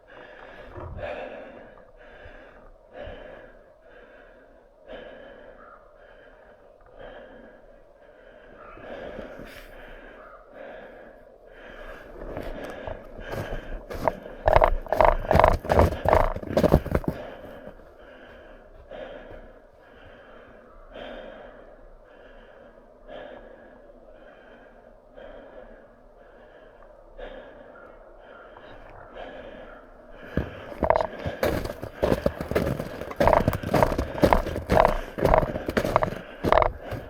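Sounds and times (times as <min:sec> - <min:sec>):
person breathing hard: 0:00.0 - 0:37.0
footsteps crunching in snow: 0:12.2 - 0:18.5, 0:30.2 - 0:37.0.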